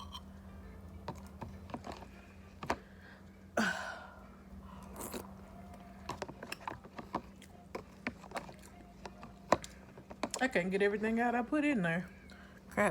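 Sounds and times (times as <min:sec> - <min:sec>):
chewing food: 0:04.8 - 0:10.4.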